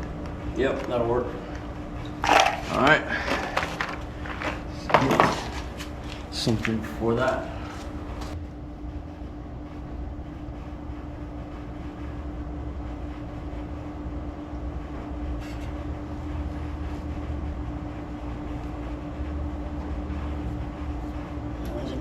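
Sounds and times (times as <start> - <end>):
machine hum: 0.0 - 22.0.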